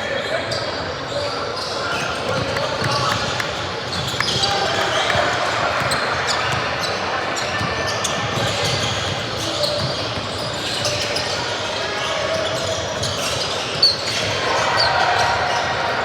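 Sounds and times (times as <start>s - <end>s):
basketball bouncing on court: 2.2s - 6.9s.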